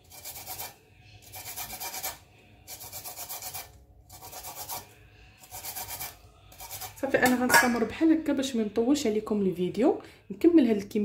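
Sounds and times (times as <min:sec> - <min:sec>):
lemon rind rasping on grater: 0:00.0 - 0:07.1.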